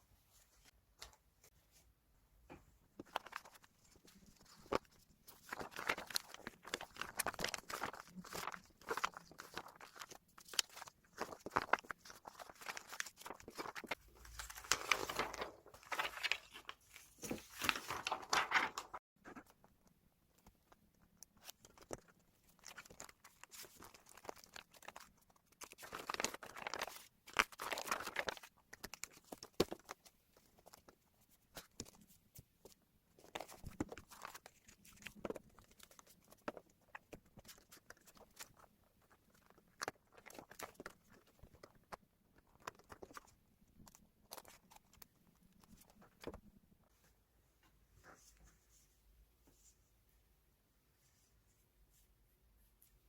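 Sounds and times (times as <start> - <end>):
magazine paper crinkling: 3.0 - 19.0, 21.5 - 30.0.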